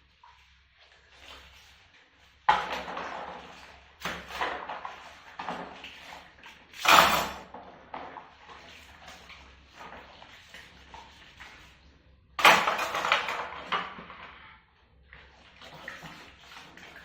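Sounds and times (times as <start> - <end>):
kitchen utensils and pots clattering: 6.8 - 8.3, 12.4 - 14.0.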